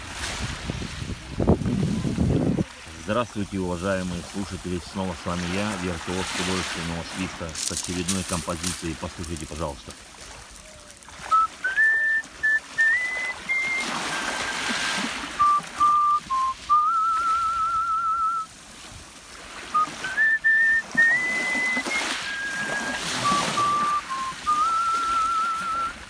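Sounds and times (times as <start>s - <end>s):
person whistling a melody: 11.2s - 18.5s, 19.7s - 26.0s.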